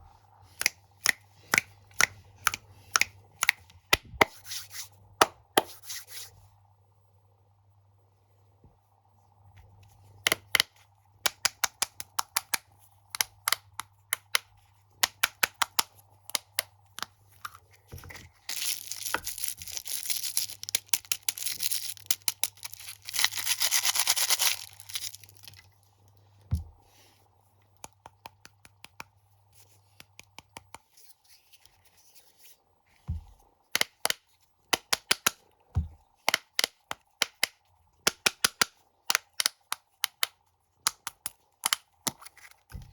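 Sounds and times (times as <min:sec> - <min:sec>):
crunching cheese snacks: 0:18.5 - 0:25.7.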